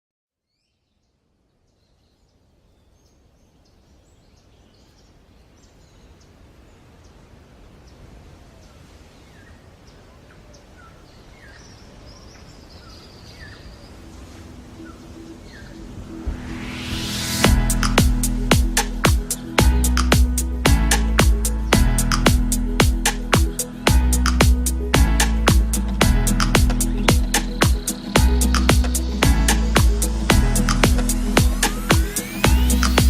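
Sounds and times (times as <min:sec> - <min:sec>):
small birds chirping: 0:18.7 - 0:31.0.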